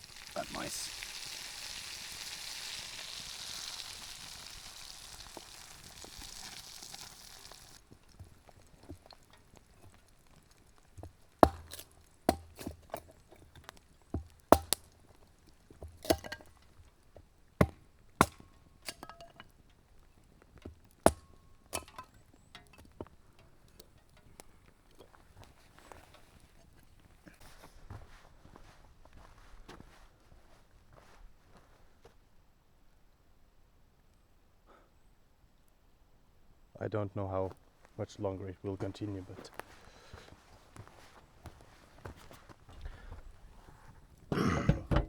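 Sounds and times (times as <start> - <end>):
butter sizzling in a frying pan: 0.0 - 23.1
utensils knocking against a pan: 11.4 - 14.9, 15.8 - 16.6, 21.1 - 22.8.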